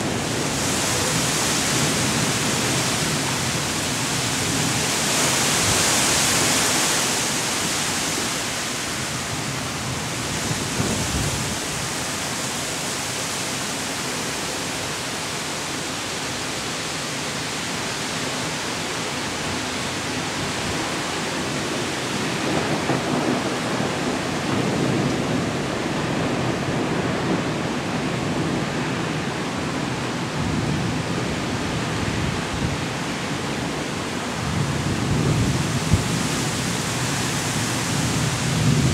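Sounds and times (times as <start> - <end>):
gusting wind: 0.0 - 38.9
heavy rain: 0.0 - 38.9
low thunder rumbling: 20.4 - 38.9.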